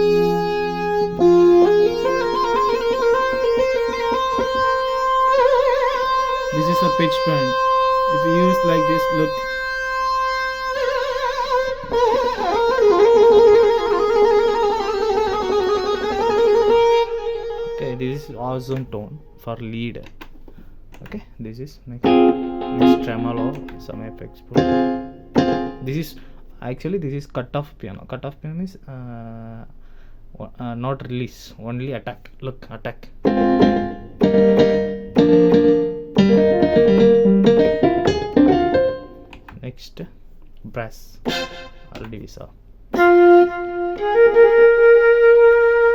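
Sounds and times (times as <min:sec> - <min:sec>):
keyboard piano chords: 0:00.0 - 0:10.8, 0:22.0 - 0:26.3, 0:33.2 - 0:39.5
reedy synth lead with pitch bends: 0:00.0 - 0:18.0.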